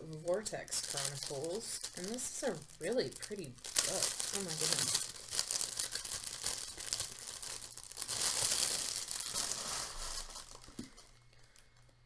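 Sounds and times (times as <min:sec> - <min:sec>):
wrapping crinkling and tearing: 0:00.1 - 0:12.0.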